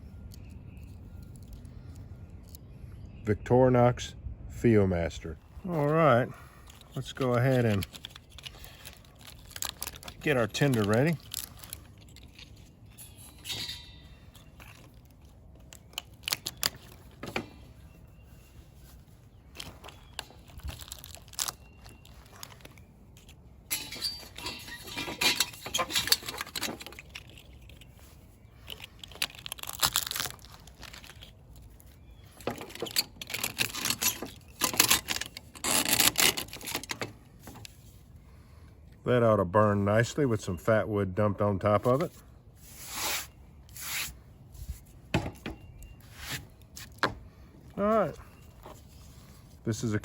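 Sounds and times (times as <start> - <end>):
dry tinder crumpled by hand: 7.0 - 12.8, 19.5 - 23.4, 26.0 - 32.4.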